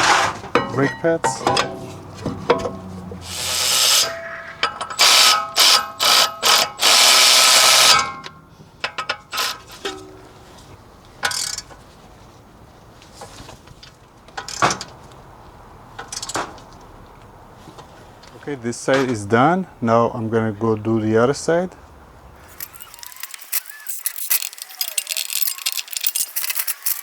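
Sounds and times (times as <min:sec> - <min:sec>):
power tool running: 0:03.2 - 0:08.1
light metal clinks and clicks: 0:22.6 - 0:27.0.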